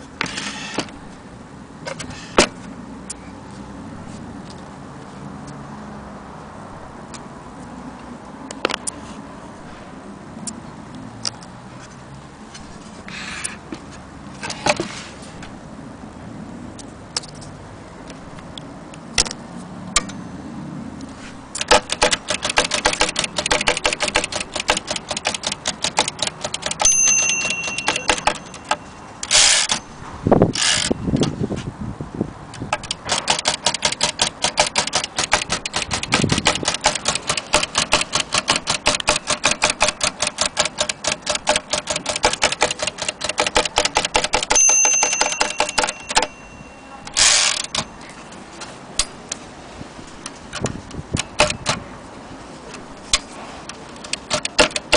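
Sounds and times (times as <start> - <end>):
ratcheting carriage return: 21.5 - 29.9, 30.5 - 31.3, 32.7 - 46.4, 47.1 - 47.9, 50.5 - 51.8, 52.7 - 54.9
typewriter key strikes: 21.6 - 29.8, 32.8 - 46.5, 47.1 - 47.9, 51.2 - 51.8, 54.0 - 54.9
typewriter margin bell: 21.7 - 29.9, 33.1 - 48.2.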